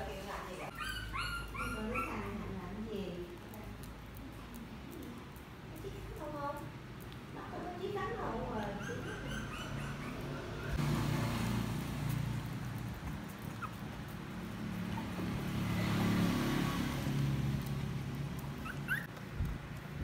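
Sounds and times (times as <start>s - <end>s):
puppy whimpering: 0.7s - 2.5s, 8.5s - 10.8s, 13.0s - 15.7s, 18.4s - 19.2s
puppy yipping: 0.7s - 2.5s, 8.5s - 10.8s, 12.7s - 19.2s.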